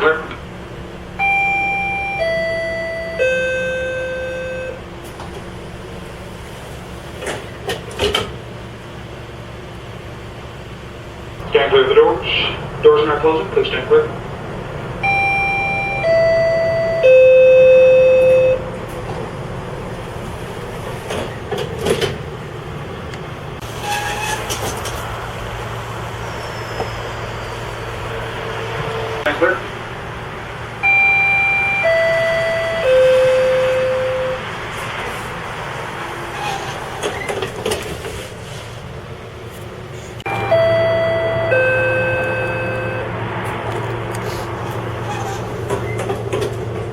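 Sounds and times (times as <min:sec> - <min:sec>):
steady background rumble: 0:00.0 - 0:26.2, 0:27.9 - 0:46.9
descending door chime: 0:01.2 - 0:04.8, 0:15.0 - 0:18.6, 0:30.8 - 0:34.5, 0:40.2 - 0:43.2.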